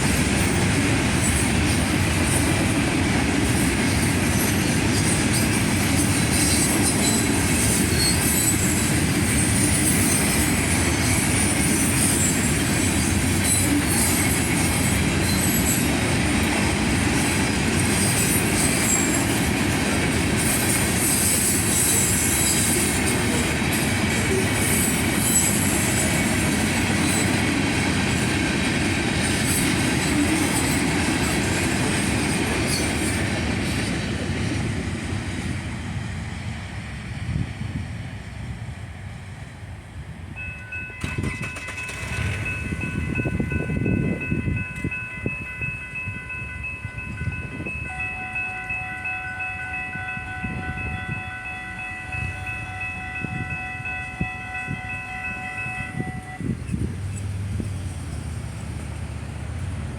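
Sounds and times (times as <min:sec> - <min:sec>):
freight train wheels rumbling: 0:00.0 - 0:59.9
high wheel squeal: 0:04.4 - 0:15.9, 0:24.6 - 0:26.1.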